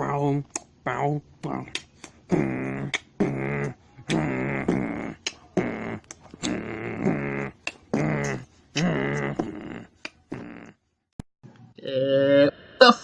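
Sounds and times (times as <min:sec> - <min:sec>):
beatbox pitched vocal tones: 0:00.0 - 0:10.8
mouth clicks and pops: 0:01.4 - 0:10.8.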